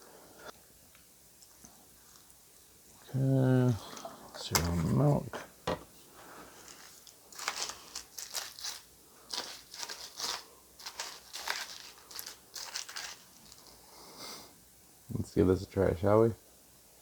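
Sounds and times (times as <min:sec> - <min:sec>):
plastic packaging crinkling: 0:06.3 - 0:13.8.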